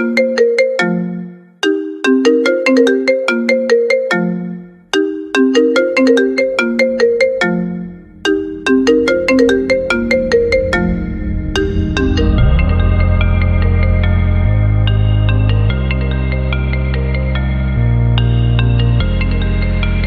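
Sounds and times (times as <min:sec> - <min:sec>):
plucked phone ringtone melody: 0:00.0 - 0:11.0
low steady tone: 0:06.5 - 0:16.5.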